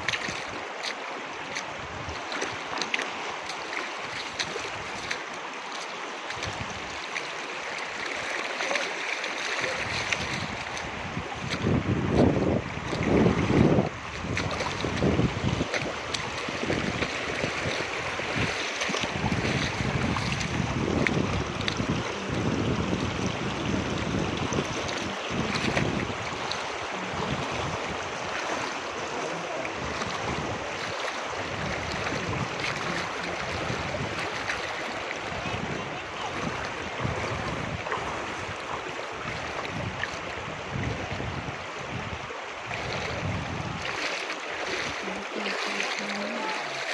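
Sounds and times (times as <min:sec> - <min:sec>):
rushing river water: 0:00.0 - 0:46.9
wind buffeting microphone: 0:06.3 - 0:07.0, 0:09.6 - 0:45.5.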